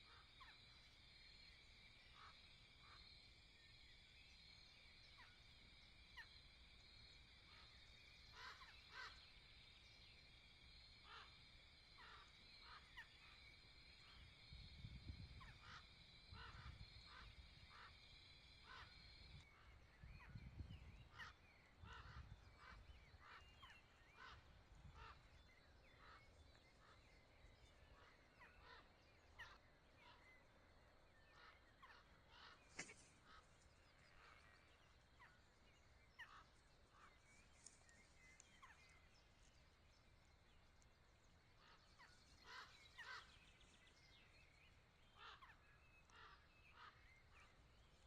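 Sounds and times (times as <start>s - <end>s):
high insect drone: 0.0s - 20.7s
faint birds chirping: 0.0s - 48.0s
low wind rumble: 19.2s - 21.2s
sharp click: 32.8s - 33.1s.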